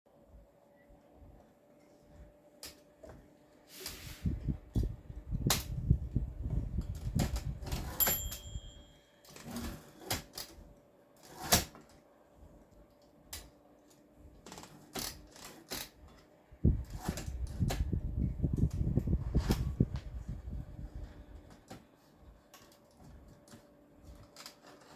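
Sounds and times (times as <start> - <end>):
typewriter bell ring: 7.8 - 9.6
typewriter clicks and clunks: 11.2 - 11.9, 14.4 - 16.2.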